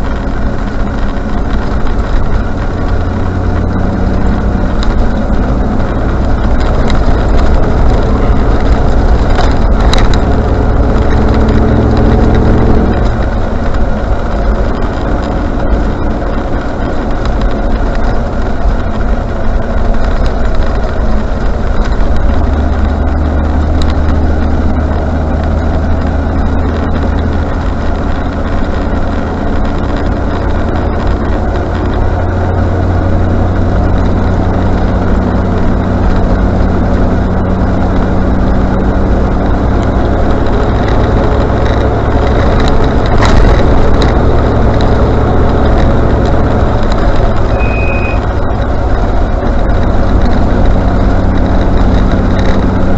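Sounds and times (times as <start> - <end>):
car engine running: 0.0 - 52.9
brake squeal: 47.3 - 48.5.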